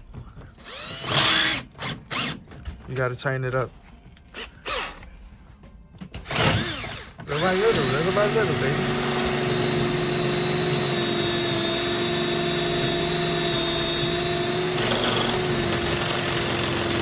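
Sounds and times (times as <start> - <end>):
power drill whining: 0.4 - 2.4, 4.3 - 5.0, 6.2 - 17.0.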